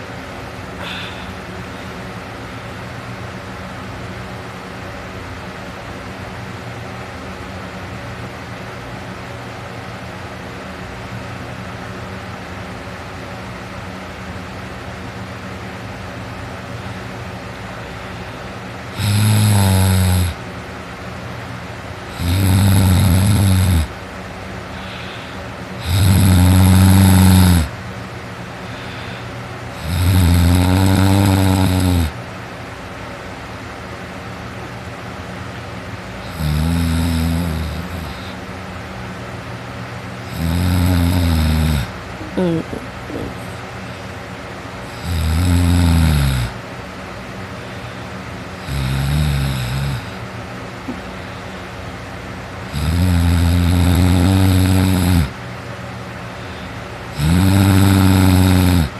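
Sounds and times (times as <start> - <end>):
person snoring heavily: 0.8 - 1.4, 18.9 - 20.4, 22.1 - 24.0, 24.7 - 27.8, 28.7 - 32.2, 36.2 - 38.4, 40.2 - 44.0, 44.8 - 46.6, 47.6 - 50.2, 52.7 - 55.4, 56.4 - 58.9.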